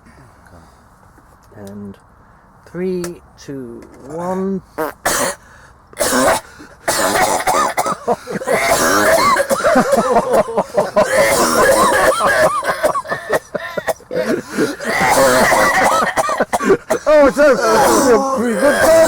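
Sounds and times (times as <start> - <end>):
man coughing: 6.0 - 19.0.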